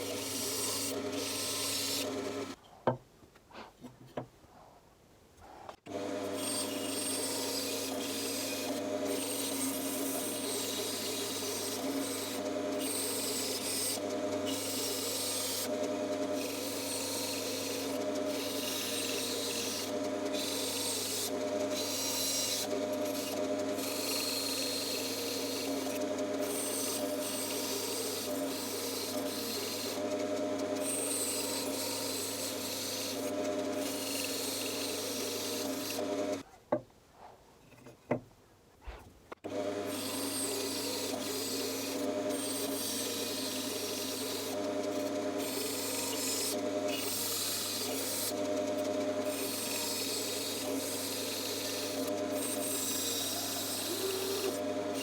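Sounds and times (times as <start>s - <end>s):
bandsaw cutting wood: 0.0s - 2.6s, 5.9s - 36.4s, 39.4s - 55.0s.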